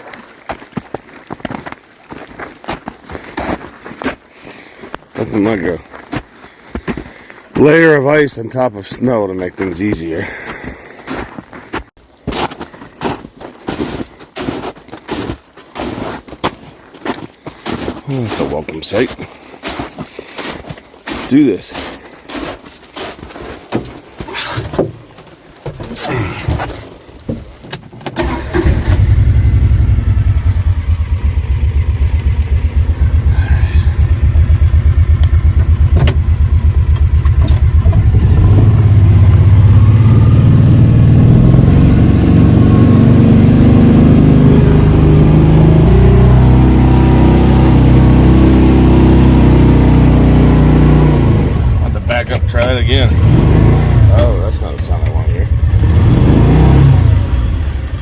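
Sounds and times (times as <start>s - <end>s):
vehicle engine starting and revving: 28.2s - 58.0s.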